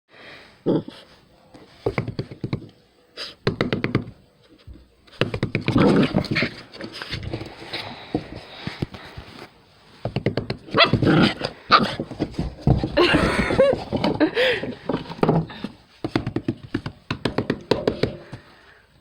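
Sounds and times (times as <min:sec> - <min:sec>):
person laughing: 0:13.0 - 0:14.9.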